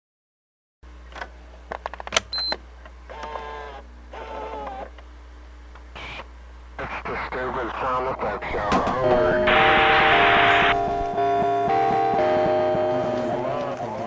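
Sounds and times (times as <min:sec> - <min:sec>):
steady low hum: 0:00.8 - 0:14.0
buzzy held tones: 0:05.8 - 0:14.0
short high electronic beep: 0:09.1 - 0:13.5.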